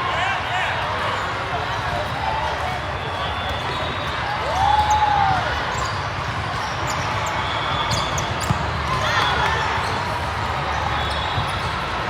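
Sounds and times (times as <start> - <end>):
crowd chatter in a hall: 0.0 - 12.0
shoe squeaks: 5.7 - 10.1, 10.9 - 11.9.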